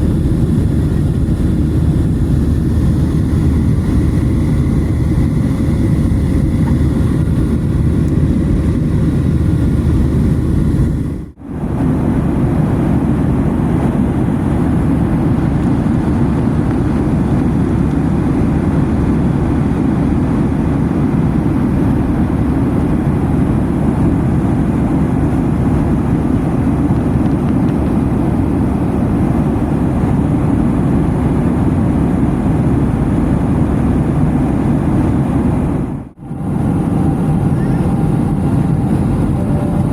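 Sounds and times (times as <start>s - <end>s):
vehicle interior rumble: 0.0s - 11.4s.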